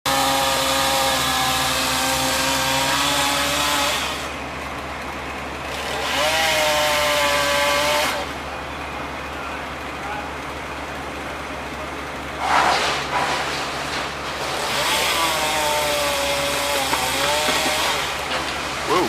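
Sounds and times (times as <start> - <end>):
chainsaw revving and idling: 0.1 - 4.4, 5.6 - 8.4, 14.3 - 19.0.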